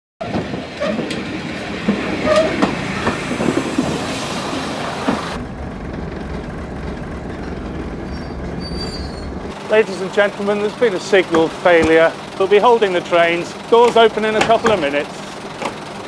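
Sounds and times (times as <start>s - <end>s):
train clatter and knocks: 0.2s - 16.0s
low rumble: 5.4s - 9.6s.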